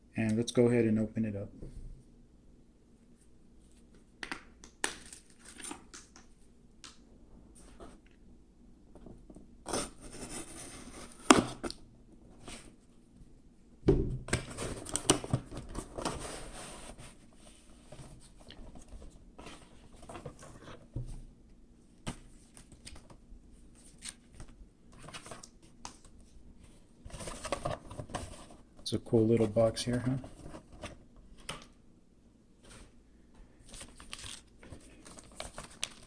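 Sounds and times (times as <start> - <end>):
box packaging scraping and rustling: 9.7 - 11.6, 14.4 - 18.3, 27.1 - 28.7.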